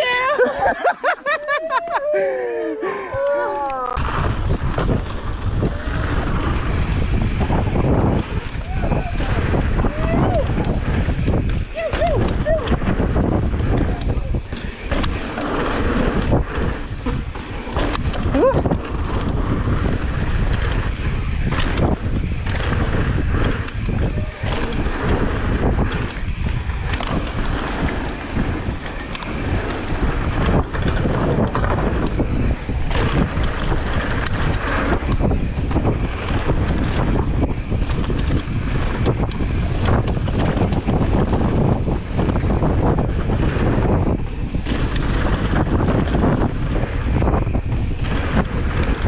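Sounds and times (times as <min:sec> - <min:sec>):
wind buffeting microphone: 0:03.0 - 0:49.0
deep rumble: 0:03.7 - 0:49.0.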